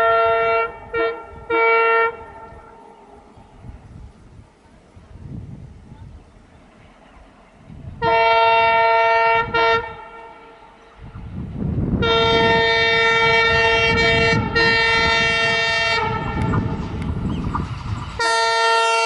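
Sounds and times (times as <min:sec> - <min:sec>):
locomotive horn honking: 0:00.0 - 0:03.0, 0:08.0 - 0:10.7, 0:11.9 - 0:16.9, 0:18.2 - 0:19.0
low rumble of approaching train: 0:00.0 - 0:19.0.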